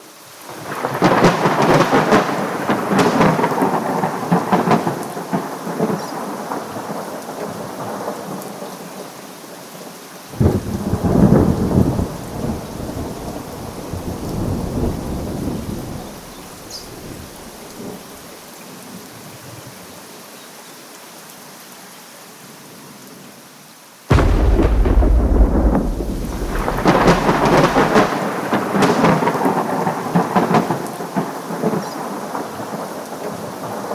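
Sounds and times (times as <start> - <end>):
steady rain: 0.0 - 33.9
thunder claps and rumble: 0.8 - 6.0, 10.4 - 17.8, 24.1 - 31.8.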